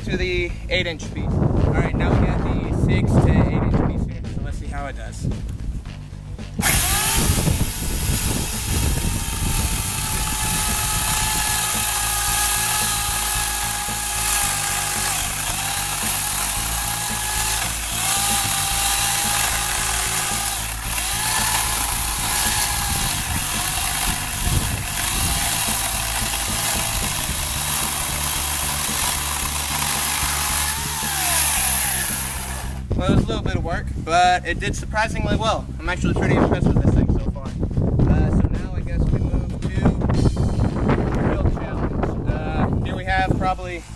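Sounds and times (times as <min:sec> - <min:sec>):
electric chainsaw cutting log: 0:06.6 - 0:32.9.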